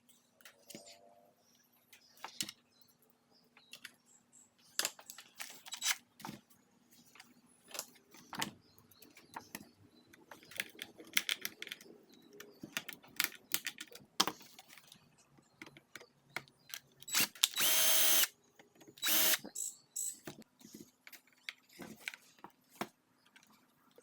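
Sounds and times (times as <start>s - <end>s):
plastic parts clicking and rattling: 7.1s - 17.8s
small electric motor whirring: 17.1s - 18.3s, 19.0s - 20.2s.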